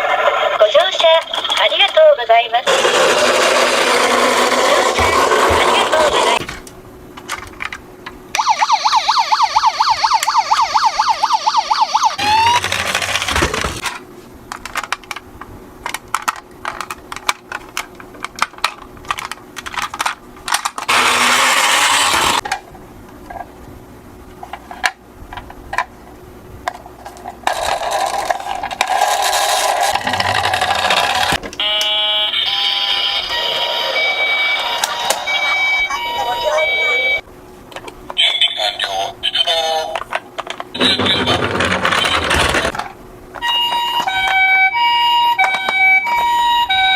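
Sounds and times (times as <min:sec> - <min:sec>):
toy siren warbling: 0:08.4 - 0:12.8, 0:30.1 - 0:37.2, 0:43.4 - 0:46.9.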